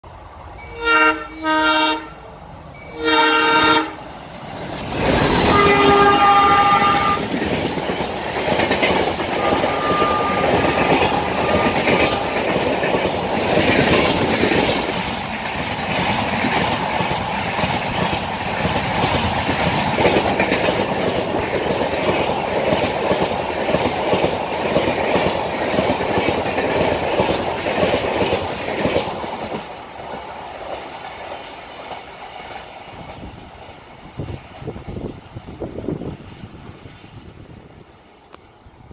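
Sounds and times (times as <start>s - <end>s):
locomotive horn blasts: 0.6s - 4.0s, 5.2s - 7.3s, 9.3s - 12.4s
coaches clattering over rail joints: 7.2s - 30.3s.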